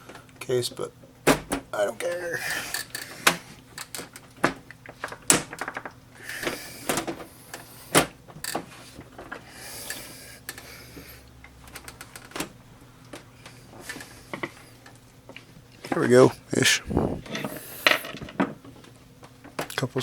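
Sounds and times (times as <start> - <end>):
clicks and knocks on computer case: 4.1 - 6.0.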